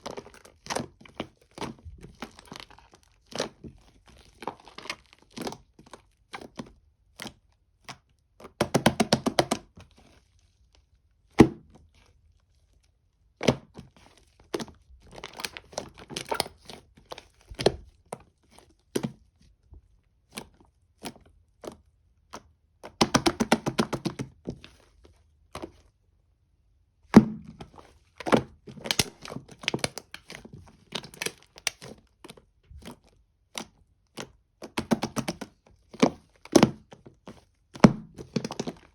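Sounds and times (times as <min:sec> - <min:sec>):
foam slime popping and crackling: 0:27.2 - 0:32.0.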